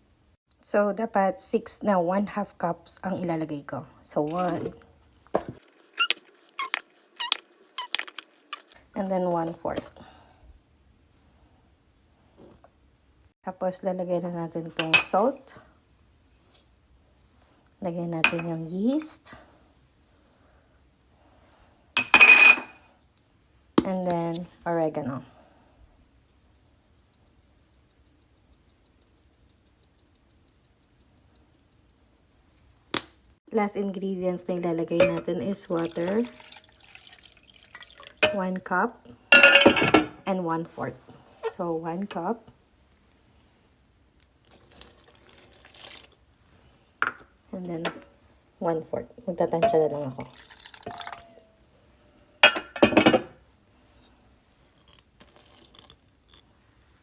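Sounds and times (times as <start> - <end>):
kitchenware clinking: 14.8 - 15.2, 18.2 - 18.6, 22.0 - 22.8, 35.0 - 38.5, 39.3 - 40.2, 49.6 - 51.5, 52.4 - 53.4
faint fast ticking: 26.4 - 32.2.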